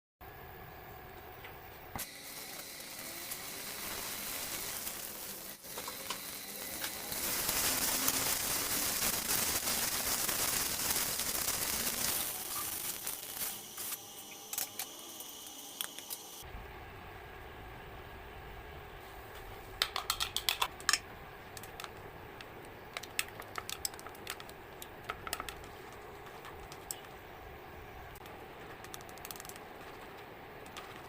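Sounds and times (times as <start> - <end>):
food sizzling in a pan: 2.0 - 16.4.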